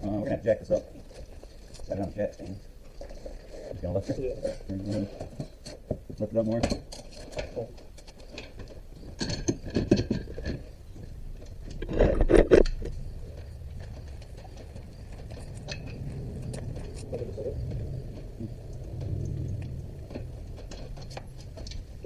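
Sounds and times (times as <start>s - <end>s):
metal clanking and rattling: 6.4s - 22.0s.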